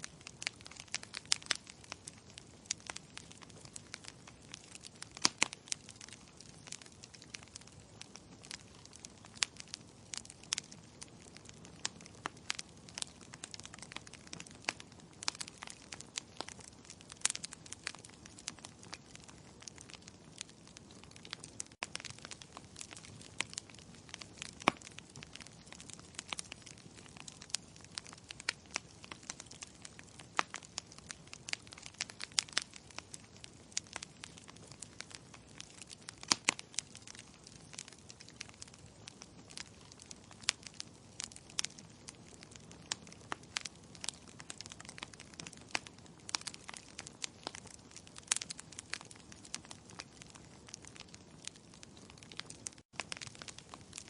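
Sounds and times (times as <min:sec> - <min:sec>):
soft steady hiss: 0:00.0 - 0:16.4
logs crackling and popping: 0:00.0 - 0:54.0.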